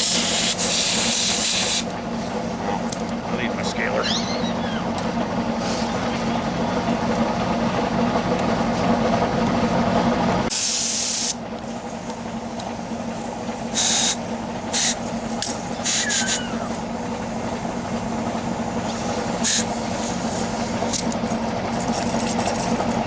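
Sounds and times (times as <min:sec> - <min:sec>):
hissing air bursts: 0:00.0 - 0:02.9, 0:10.5 - 0:17.1, 0:18.7 - 0:20.9
steady low hum: 0:00.0 - 0:10.4.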